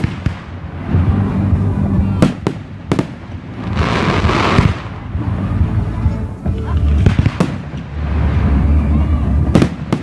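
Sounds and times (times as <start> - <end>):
firework bangs: 0.0 - 5.6, 6.8 - 10.0
firework rushing burst: 0.0 - 5.9, 6.8 - 10.0
steady low rumble: 0.0 - 10.0.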